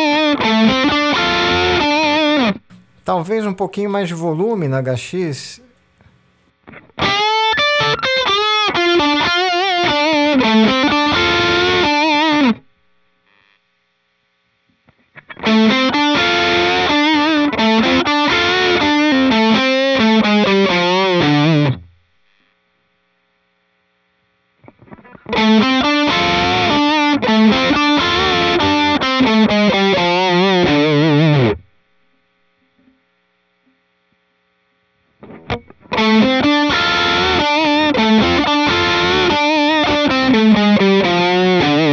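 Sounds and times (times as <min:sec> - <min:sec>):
overdriven electric guitar: 0:00.0 - 0:03.1, 0:07.0 - 0:12.7, 0:14.9 - 0:22.4, 0:24.6 - 0:31.7, 0:35.2 - 0:41.9.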